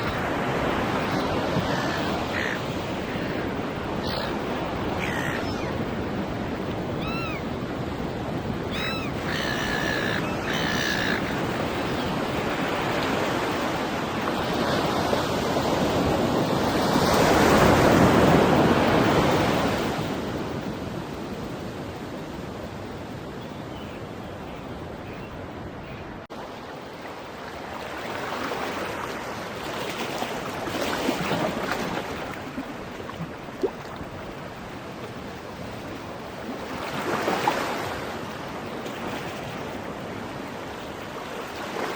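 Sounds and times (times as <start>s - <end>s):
seagulls calling: 0.0s - 12.2s
ocean waves breaking on beach: 0.0s - 41.9s.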